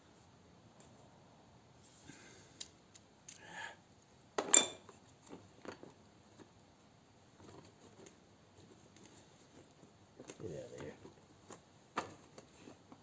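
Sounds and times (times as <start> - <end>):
metal hand tools clinking: 4.5 - 4.9.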